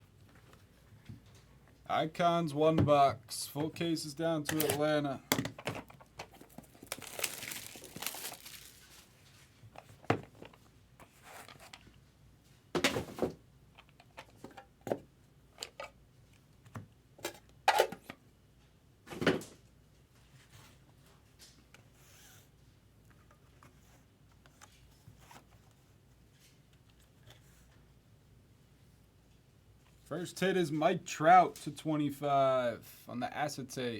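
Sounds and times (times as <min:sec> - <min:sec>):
packaging rustling and tearing: 0:06.3 - 0:09.2.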